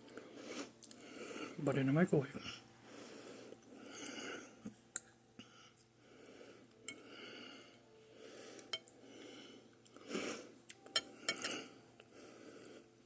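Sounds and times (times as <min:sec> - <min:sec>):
chewing and breathing: 0:00.0 - 0:01.6, 0:05.4 - 0:13.0
cutlery clicking against a plate: 0:10.8 - 0:11.6.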